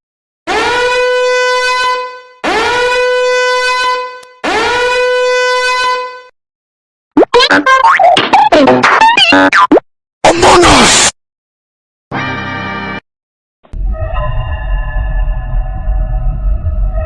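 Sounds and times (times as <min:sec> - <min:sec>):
horn blasts: 0:00.5 - 0:06.4
cartoon sound effects: 0:07.2 - 0:11.1.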